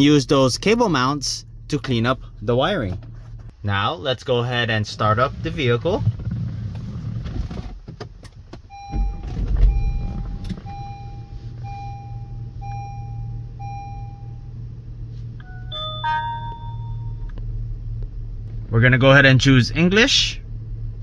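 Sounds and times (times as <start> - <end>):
car engine cranking and starting: 0.0 - 3.6, 4.6 - 21.0
car engine idling: 0.0 - 7.5
electronic chime beeping: 15.4 - 17.3.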